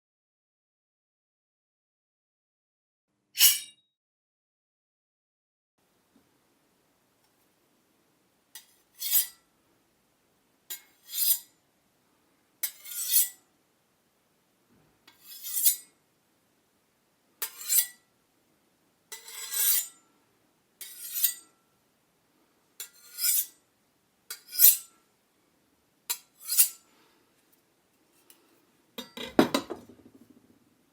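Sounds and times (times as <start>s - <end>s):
knife drawn with metallic scrape: 3.4s - 3.8s, 8.6s - 9.3s, 11.0s - 11.4s, 12.6s - 13.4s, 15.1s - 15.8s, 19.2s - 19.9s, 20.8s - 21.4s, 22.9s - 23.5s, 26.4s - 26.8s.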